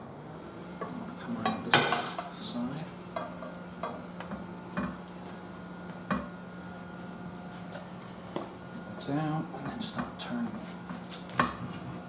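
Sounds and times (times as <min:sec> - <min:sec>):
light metal knocks and clanks: 0:03.1 - 0:05.0.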